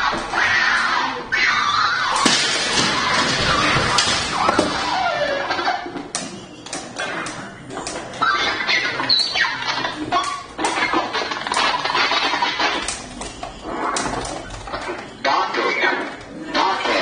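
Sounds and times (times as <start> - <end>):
robot malfunctioning: 8.2 - 13.0.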